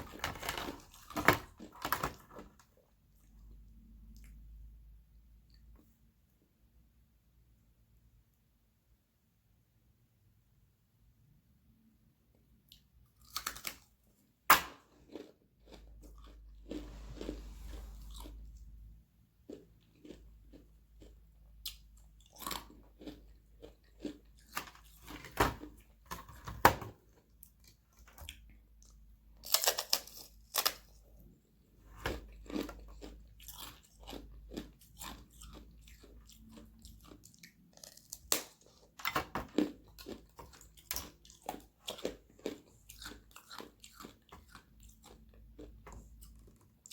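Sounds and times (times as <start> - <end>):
ice being bitten and chewed: 14.6 - 18.8, 19.4 - 26.2, 32.0 - 46.9.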